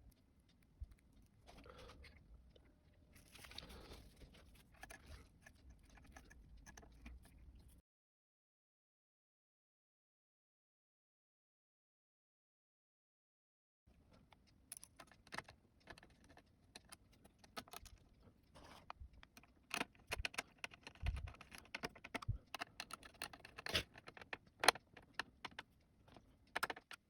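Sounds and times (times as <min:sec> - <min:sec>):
small clicks and taps: 0:14.1 - 0:27.0.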